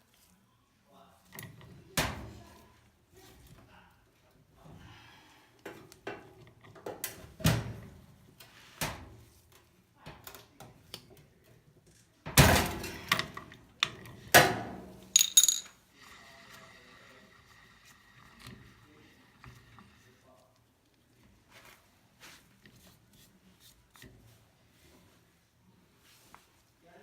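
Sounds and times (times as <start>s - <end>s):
tools and metal parts clanking: 15.1s - 15.8s.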